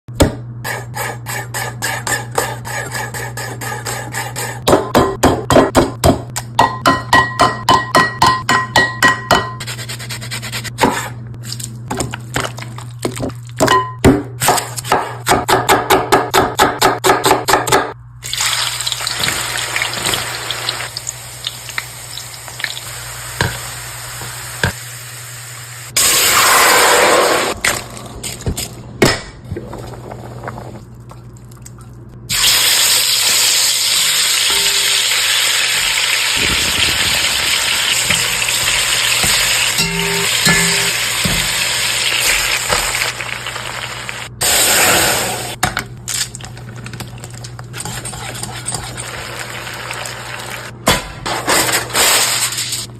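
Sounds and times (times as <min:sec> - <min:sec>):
stirring knocks and clinks: 0:38.1 - 0:41.6, 0:46.7 - 0:49.2.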